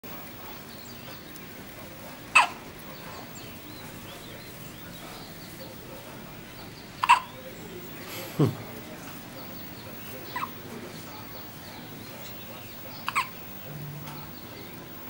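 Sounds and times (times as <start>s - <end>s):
baby hiccuping: 2.4s - 2.6s, 7.0s - 7.3s, 13.0s - 13.3s.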